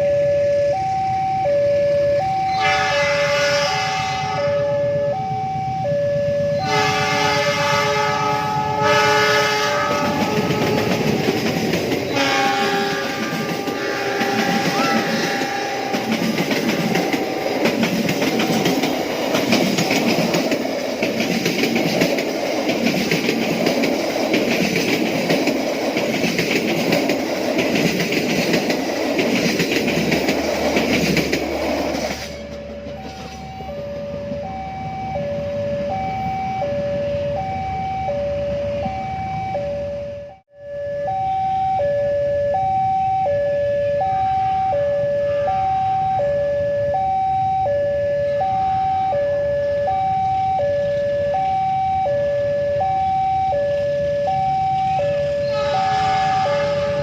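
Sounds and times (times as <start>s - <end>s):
level crossing two-tone warning: 0.0s - 3.7s, 4.4s - 57.0s
train horn: 2.5s - 5.2s, 6.5s - 11.3s, 12.1s - 17.4s, 45.2s - 46.0s, 55.0s - 57.0s
train wheels clattering on rails: 9.1s - 33.6s.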